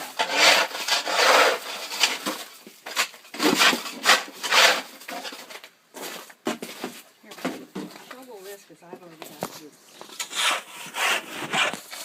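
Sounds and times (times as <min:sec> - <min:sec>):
shovel scraping icy snow: 0:00.0 - 0:05.3, 0:10.1 - 0:12.0.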